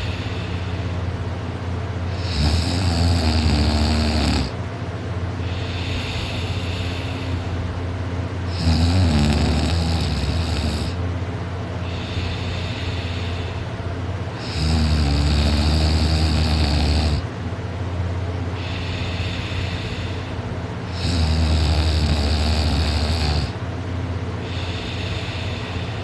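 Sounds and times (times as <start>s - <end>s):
soft breathing: 0.0s - 2.3s, 5.3s - 8.5s, 11.6s - 14.6s, 18.4s - 21.0s, 22.9s - 26.0s
person snoring loudly: 2.1s - 4.6s, 8.5s - 11.0s, 14.4s - 17.3s, 18.6s - 23.6s.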